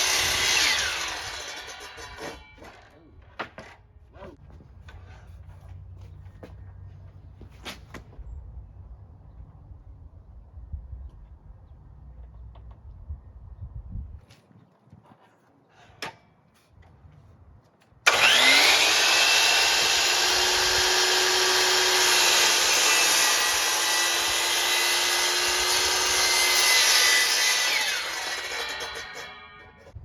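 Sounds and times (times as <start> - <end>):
cordless saw cutting plywood: 0.0 - 2.9, 18.1 - 29.8.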